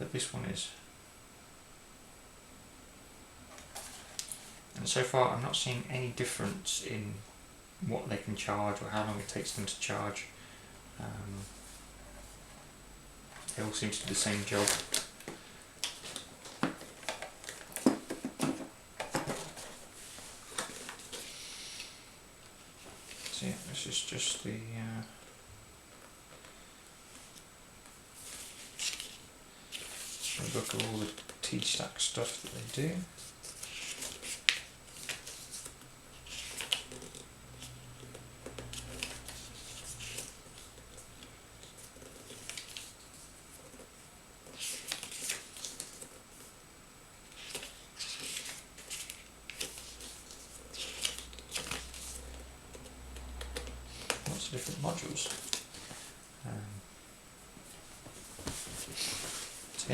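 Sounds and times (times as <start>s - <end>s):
faint low hum: 0.0s - 59.9s
paper and packaging rustling: 13.4s - 21.3s, 28.2s - 46.5s, 47.2s - 56.2s.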